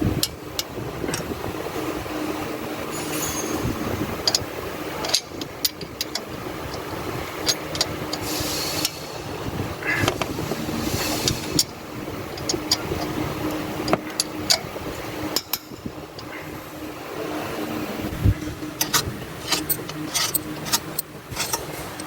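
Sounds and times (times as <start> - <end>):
low mechanical hum: 0.0 - 22.0
metal tool clicks and clinks: 5.0 - 9.0, 15.3 - 16.3, 18.8 - 22.0.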